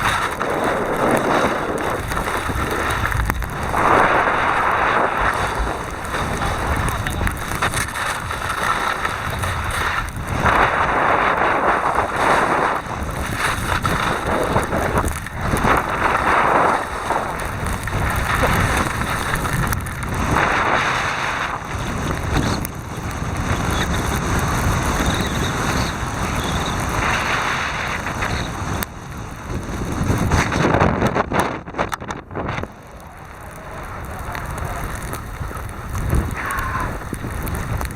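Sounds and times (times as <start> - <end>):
skis sliding on snow: 0.0 - 37.9
wind buffeting microphone: 0.0 - 37.9.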